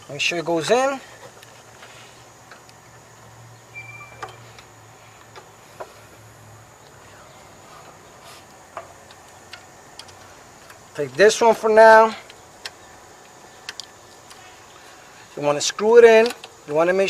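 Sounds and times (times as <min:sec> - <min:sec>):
metal clicks and taps: 0:08.7 - 0:11.2, 0:12.2 - 0:14.4, 0:16.2 - 0:16.6.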